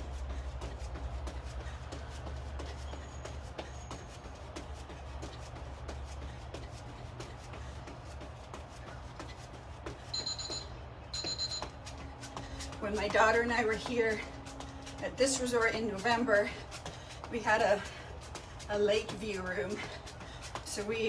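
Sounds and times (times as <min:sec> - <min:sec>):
steady low hum: 0:00.0 - 0:21.0
interval timer beeping: 0:10.1 - 0:11.8.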